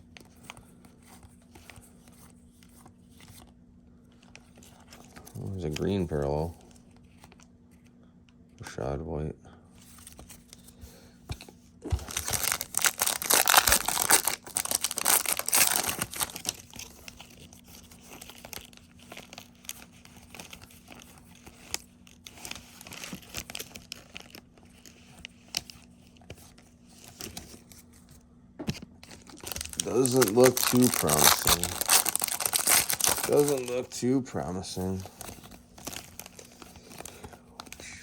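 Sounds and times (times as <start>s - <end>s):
wrapper tearing and crinkling: 12.0s - 25.8s, 29.0s - 34.0s, 34.7s - 37.9s.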